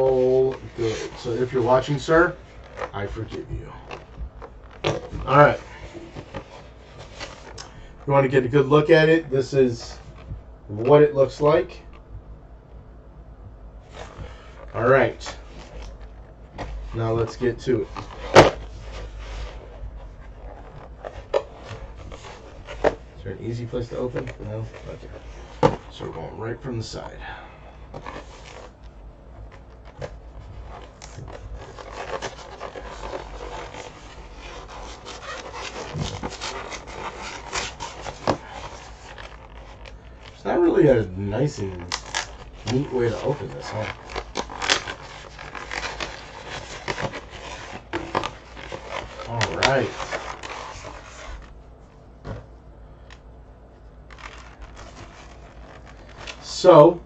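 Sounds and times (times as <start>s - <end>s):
cardboard box rustling and scraping: 0.0s - 7.6s, 13.9s - 26.3s, 29.4s - 40.3s, 41.6s - 51.5s
packaging ripping and scraping: 29.5s - 40.4s, 41.4s - 51.5s, 54.0s - 56.8s.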